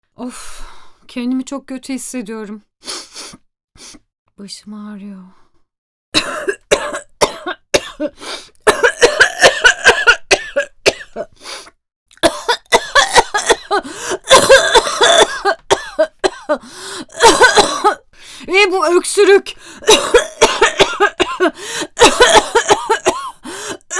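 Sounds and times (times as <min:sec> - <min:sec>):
woman coughing: 0:06.2 - 0:11.3, 0:12.2 - 0:18.1, 0:19.8 - 0:23.9.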